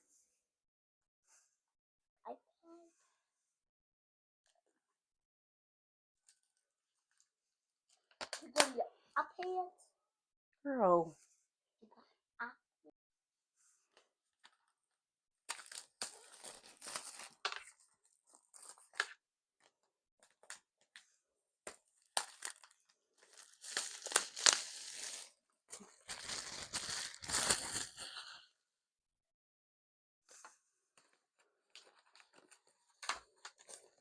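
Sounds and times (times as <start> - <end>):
packaging ripping and crinkling: 15.5 - 19.2, 22.0 - 28.4, 31.7 - 34.0.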